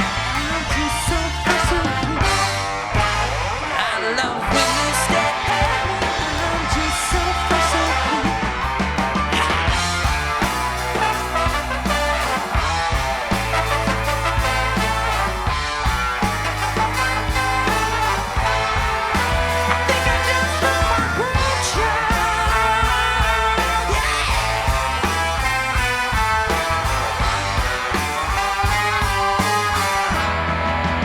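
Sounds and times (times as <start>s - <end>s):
bass: 0.0s - 31.0s
drums: 0.0s - 31.0s
horns: 0.0s - 31.0s.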